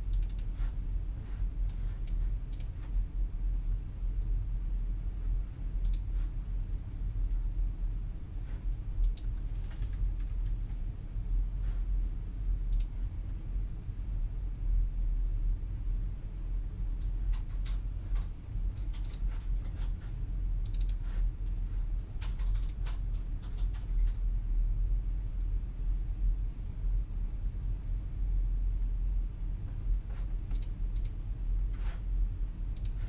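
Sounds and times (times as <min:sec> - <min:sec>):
steady low hum: 0:00.0 - 0:33.0
mouse clicks: 0:00.1 - 0:00.5, 0:05.8 - 0:06.1, 0:08.7 - 0:10.8, 0:20.6 - 0:21.0, 0:30.5 - 0:31.2
keyboard typing: 0:17.3 - 0:19.9, 0:20.6 - 0:24.2.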